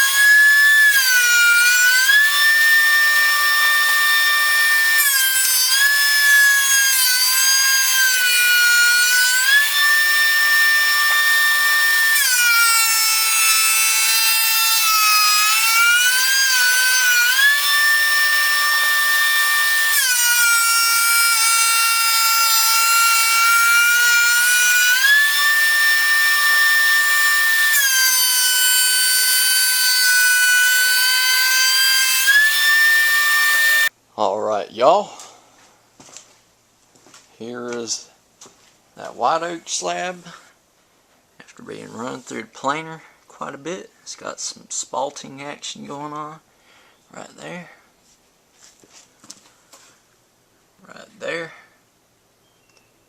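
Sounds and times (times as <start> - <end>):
thickness planer motor whine: 0.0 - 33.9.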